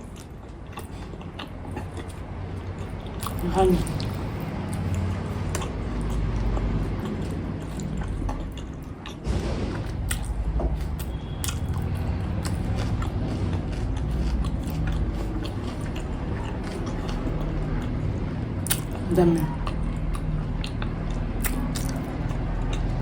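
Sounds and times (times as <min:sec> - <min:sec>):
chewing and biting dumplings: 0:00.0 - 0:23.0
steady low hum: 0:00.0 - 0:23.0
wet mouth clicks: 0:18.6 - 0:23.0.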